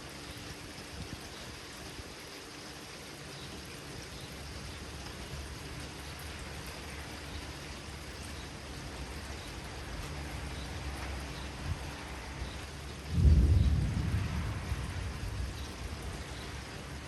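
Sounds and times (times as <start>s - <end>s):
steady rain falling: 0.0s - 17.0s
low thunder rumble: 11.5s - 17.0s.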